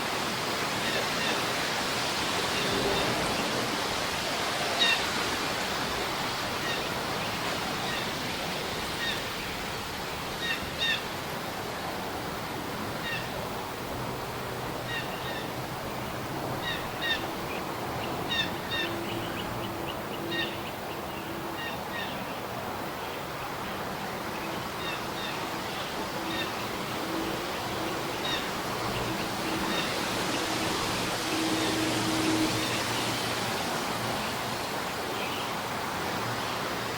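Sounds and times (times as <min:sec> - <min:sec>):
aircraft rumble: 0:01.8 - 0:06.5.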